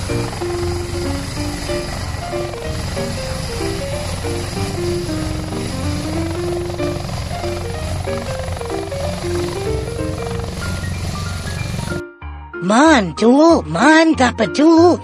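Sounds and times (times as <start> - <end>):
helicopter rotor chopping: 0.0 - 12.0
background music melody: 0.0 - 15.0.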